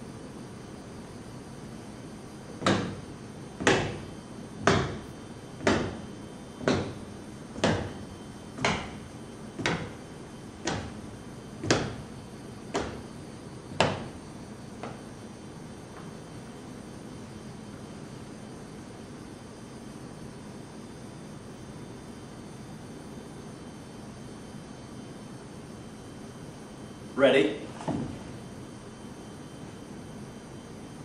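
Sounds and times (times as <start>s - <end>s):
knocks or thuds: 2.6s - 10.0s, 10.6s - 12.1s, 12.7s - 13.1s, 13.7s - 14.2s, 27.8s - 28.3s.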